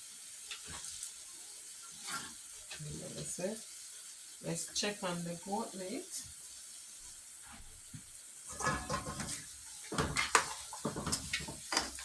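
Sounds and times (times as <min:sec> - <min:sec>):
faint steady hiss: 0:00.0 - 0:12.0
pot lid and spoon clanking: 0:08.5 - 0:09.4.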